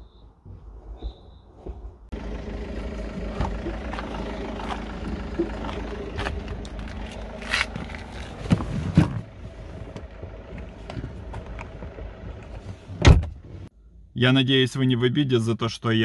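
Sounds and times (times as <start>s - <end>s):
vehicle engine running: 2.1s - 12.9s.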